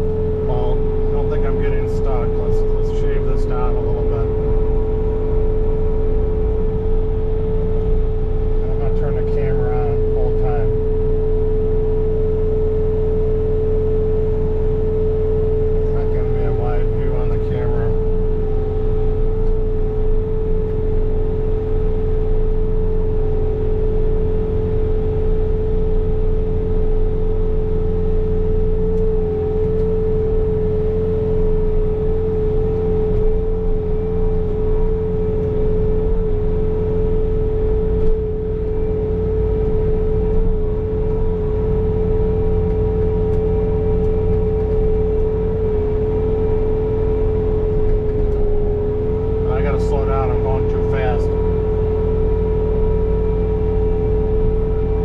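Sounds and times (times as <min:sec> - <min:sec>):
diesel engine at high throttle: 0:00.0 - 0:55.0
steady whine of snow blower: 0:00.0 - 0:55.0.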